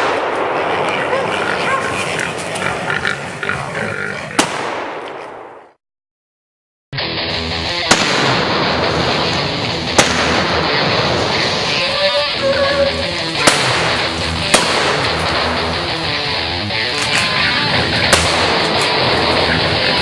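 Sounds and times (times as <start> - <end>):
sharp cracks: 0.0 - 1.2, 4.3 - 5.7, 7.7 - 12.0, 12.9 - 20.0
guitar rock music: 7.0 - 20.0.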